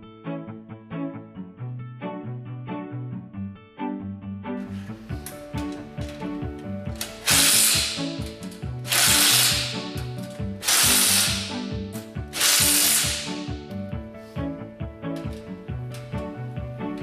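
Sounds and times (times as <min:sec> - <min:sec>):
background music: 0:00.0 - 0:17.0
impact gun driving nuts: 0:06.9 - 0:11.8, 0:12.4 - 0:13.5.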